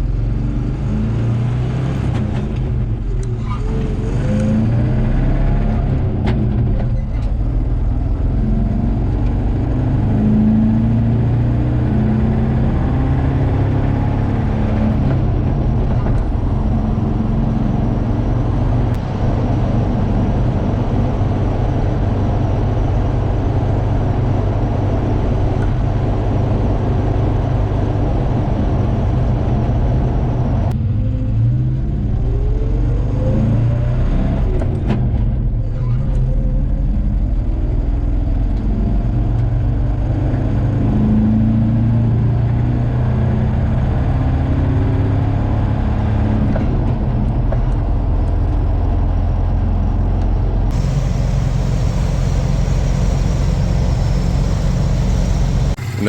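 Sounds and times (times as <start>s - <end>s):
pickup truck engine running: 50.7s - 56.0s.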